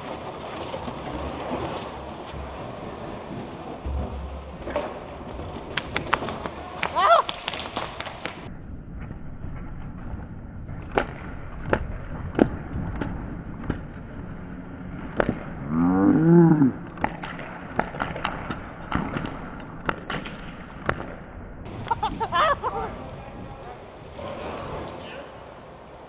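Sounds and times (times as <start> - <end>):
wavering moan-like vocal call: 15.6 - 16.9.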